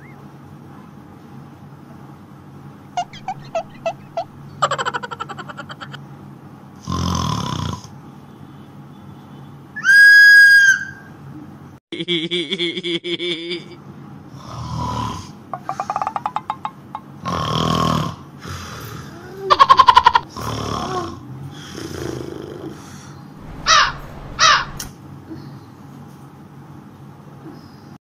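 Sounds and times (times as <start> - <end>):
man fake snoring: 6.8 - 7.9, 14.4 - 15.4, 17.3 - 18.2, 20.3 - 22.8
shrill whistle blast: 9.8 - 11.2.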